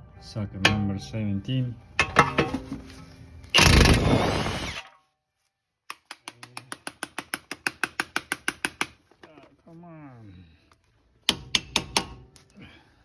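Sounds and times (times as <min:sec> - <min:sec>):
power tool burst: 0:03.5 - 0:04.9.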